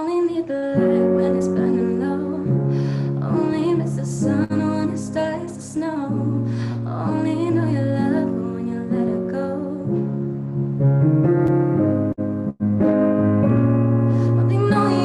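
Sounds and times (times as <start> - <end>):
woman singing: 0.0 - 10.2, 14.2 - 15.0
guitar accompaniment: 0.0 - 15.0.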